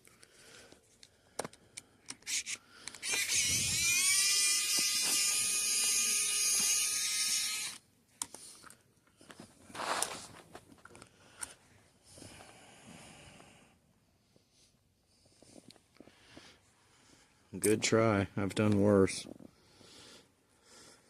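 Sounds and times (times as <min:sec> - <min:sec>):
small electric motor whining: 0:02.2 - 0:07.8.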